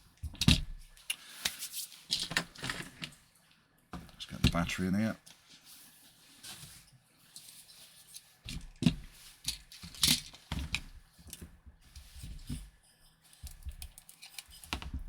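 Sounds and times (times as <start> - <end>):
clicks and rattles of rifle handling: 0.2 - 3.2, 7.3 - 15.0.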